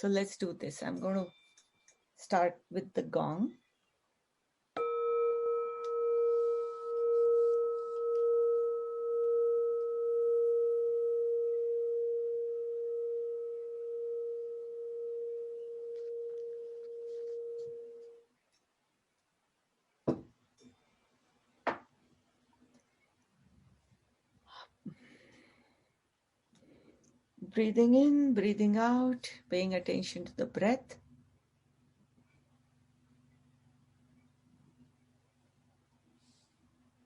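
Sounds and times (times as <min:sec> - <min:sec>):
meditation gong ringing: 0:04.8 - 0:16.4.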